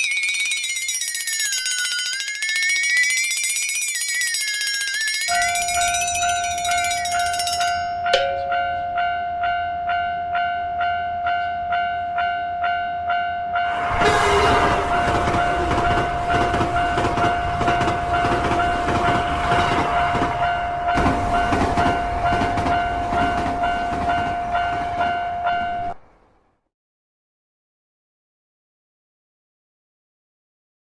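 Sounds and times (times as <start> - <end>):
railroad crossing bell dinging: 0.0 - 26.0
passing train rumble and clatter: 13.6 - 26.5.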